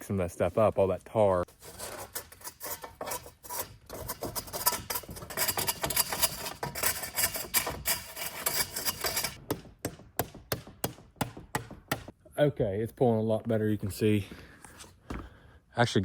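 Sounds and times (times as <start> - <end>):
pole scraping inside stovepipe: 0.4 - 9.4.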